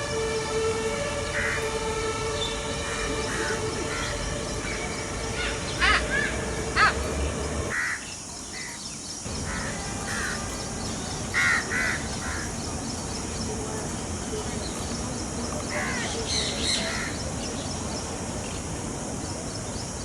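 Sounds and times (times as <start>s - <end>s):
low rumble and hum: 0.0s - 7.7s
peacock calling: 0.0s - 8.1s.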